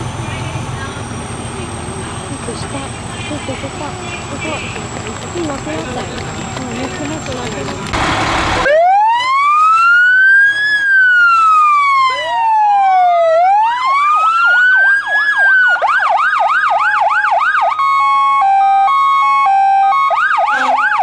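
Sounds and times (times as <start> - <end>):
fire truck sirens: 0.0 - 21.0.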